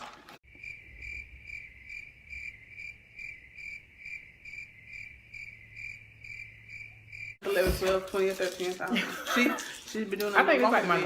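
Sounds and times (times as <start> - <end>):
cricket chirping: 0.4 - 7.4.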